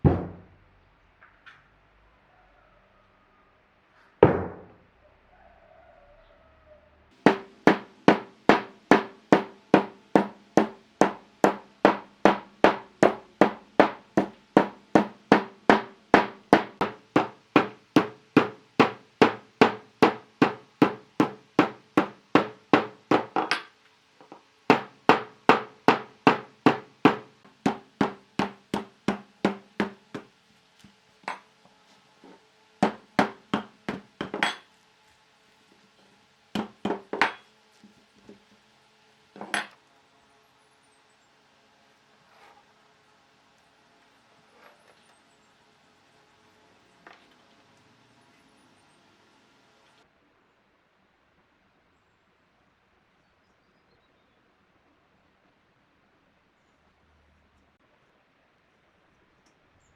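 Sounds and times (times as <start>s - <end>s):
ringing hammer blows: 7.2s - 23.6s.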